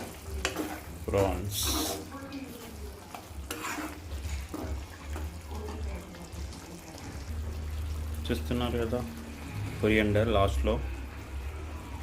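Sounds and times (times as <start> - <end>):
scraping while stirring: 0.0 - 5.5
curry sizzling in pans: 0.0 - 12.0.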